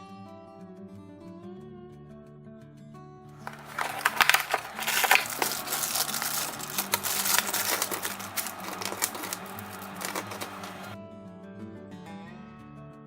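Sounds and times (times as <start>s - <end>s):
packaging crackling and crinkling: 3.4s - 11.0s
quiet background music: 3.4s - 11.0s.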